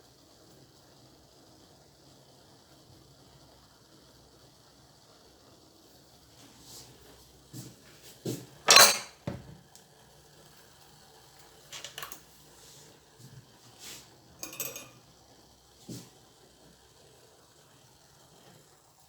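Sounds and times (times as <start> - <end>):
kitchenware clinking: 8.6 - 9.5, 11.7 - 12.2, 14.4 - 15.1.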